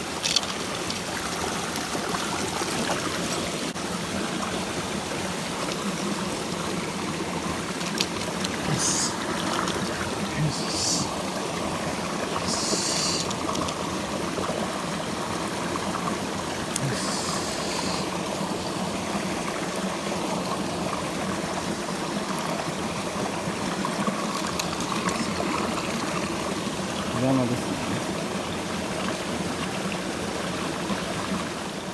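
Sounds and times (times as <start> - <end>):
water rushing over rocks: 0.0 - 31.9
short high hissing: 12.5 - 13.3.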